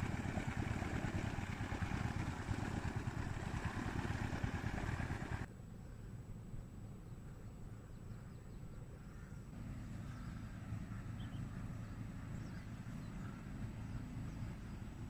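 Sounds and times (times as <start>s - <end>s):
small boat motors rumbling: 0.0s - 5.5s.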